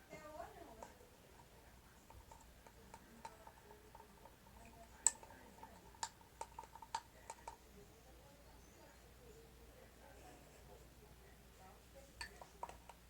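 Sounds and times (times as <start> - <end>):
containers clicking and tapping: 0.6 - 7.6, 12.2 - 13.0.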